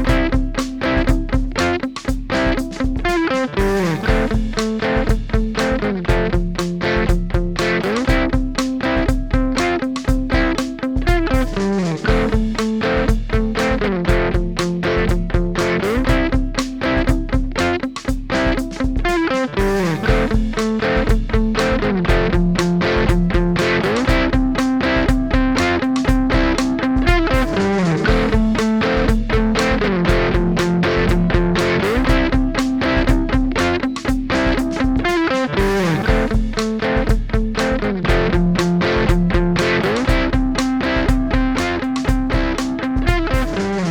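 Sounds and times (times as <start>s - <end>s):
electric guitar chords: 0.0s - 43.9s.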